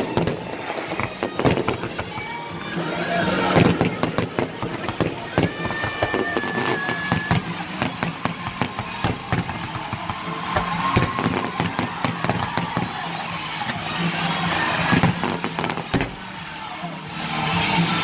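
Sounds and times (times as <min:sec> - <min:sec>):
fireworks popping and banging: 0:00.0 - 0:16.4
high firework whistle: 0:02.8 - 0:16.3.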